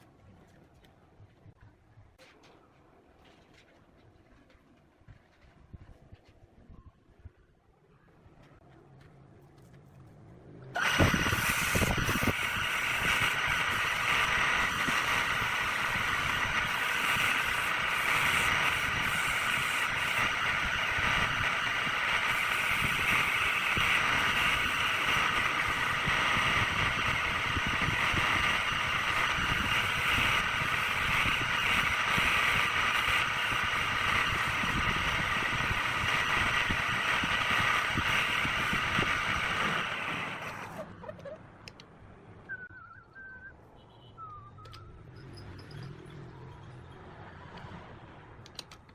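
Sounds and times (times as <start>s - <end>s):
wood lathe running: 10.8s - 40.8s.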